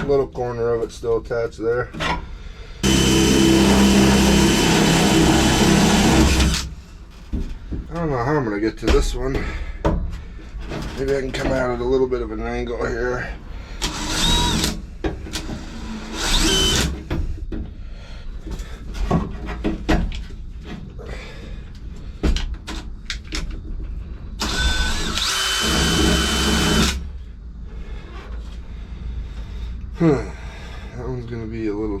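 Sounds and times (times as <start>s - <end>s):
power drill whining: 2.8s - 6.8s, 13.8s - 17.0s, 24.4s - 27.0s.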